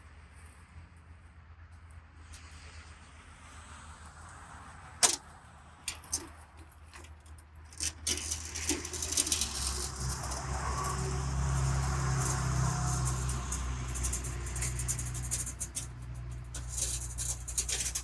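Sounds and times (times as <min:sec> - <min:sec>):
metal tools clinking: 0:07.7 - 0:18.0.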